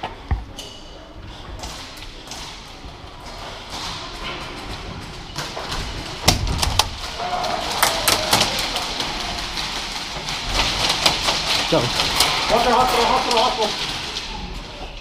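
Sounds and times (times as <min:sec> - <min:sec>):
sharp clicks and knocks: 0:03.7 - 0:07.1.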